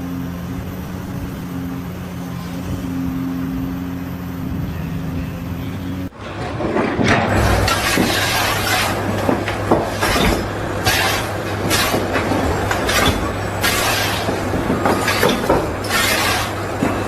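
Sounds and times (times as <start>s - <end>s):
machine humming: 0.0s - 17.0s
rattling and clatter: 6.0s - 17.0s.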